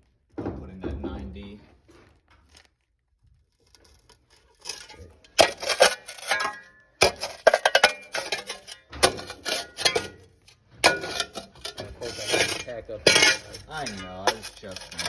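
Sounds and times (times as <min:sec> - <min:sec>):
metal tool scraping rocks and dirt: 0:03.6 - 0:15.0.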